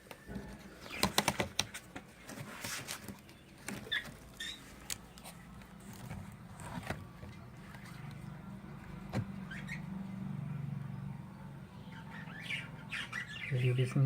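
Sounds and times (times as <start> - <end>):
nest box clicks and knocks: 0.9 - 1.8
high bird chirps: 11.8 - 14.0.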